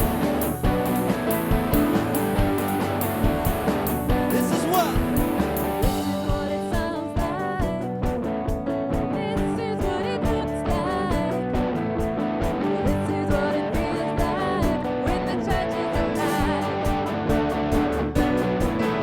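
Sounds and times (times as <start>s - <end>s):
worship band playing: 0.0s - 7.7s, 12.1s - 19.0s
person singing: 4.1s - 8.0s, 12.6s - 17.4s.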